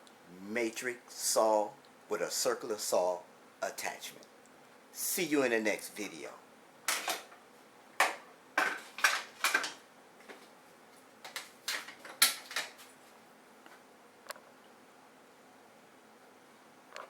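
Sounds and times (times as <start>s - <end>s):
hard objects clattering: 8.0s - 9.8s, 11.3s - 12.9s.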